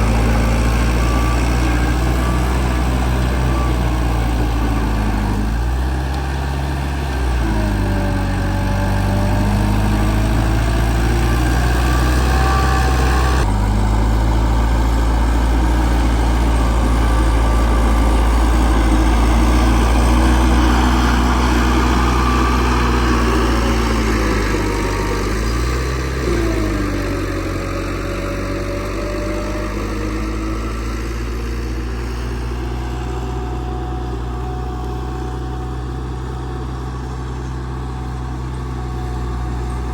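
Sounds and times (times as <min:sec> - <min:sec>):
heavy diesel machinery engine: 0:00.0 - 0:39.9.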